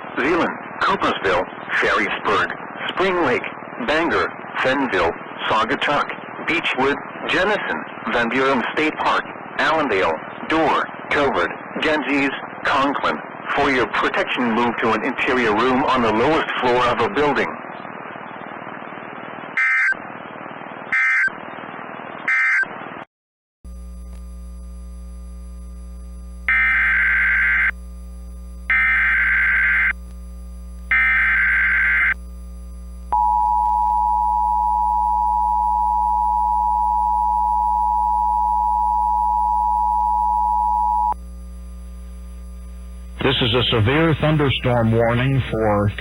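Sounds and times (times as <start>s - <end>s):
mains hum: 0.0s - 23.0s, 23.7s - 46.0s
static: 0.0s - 23.1s, 23.7s - 46.0s
screeching data bursts: 26.5s - 27.8s, 30.9s - 32.2s.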